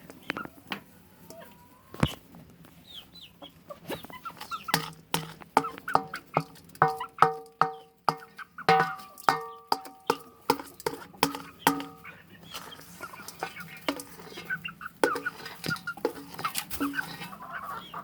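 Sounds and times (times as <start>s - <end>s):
chickens clucking: 0.0s - 18.0s
beaks pecking a bowl: 3.9s - 18.0s.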